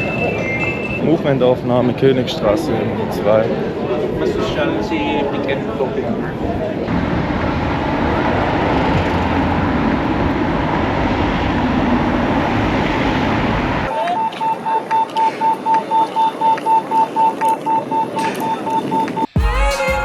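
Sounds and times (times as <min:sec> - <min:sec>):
busy street ambience: 0:00.0 - 0:20.0
rapid electronic beeping: 0:13.9 - 0:20.0.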